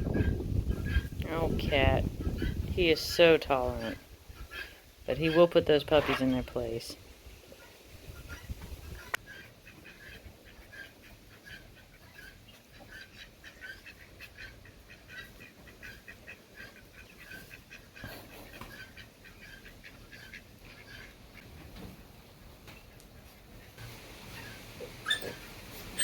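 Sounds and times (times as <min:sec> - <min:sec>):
high squeaky animal calls: 0:24.3 - 0:26.0.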